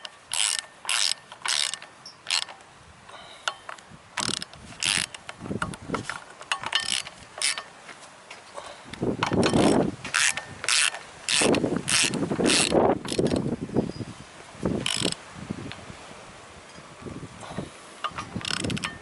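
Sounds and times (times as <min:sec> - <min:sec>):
socket ratchet clicking: 0:00.0 - 0:02.6, 0:03.4 - 0:07.7, 0:09.2 - 0:13.5, 0:14.8 - 0:15.2, 0:18.0 - 0:19.0.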